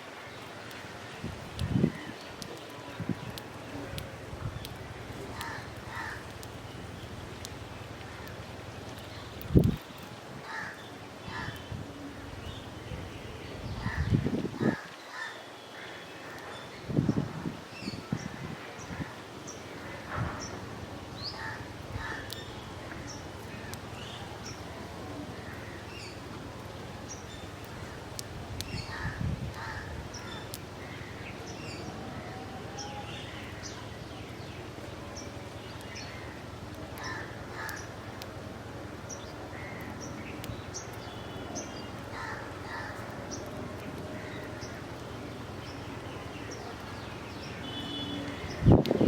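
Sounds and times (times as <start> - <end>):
outdoor background hiss: 0.0 - 49.0
small birds chirping: 0.2 - 17.2, 17.8 - 31.9, 32.8 - 38.3, 39.0 - 48.8
crows cawing: 5.3 - 6.4, 10.4 - 11.6, 14.7 - 16.4, 21.4 - 22.4, 28.9 - 31.2, 37.0 - 37.9, 42.1 - 43.2.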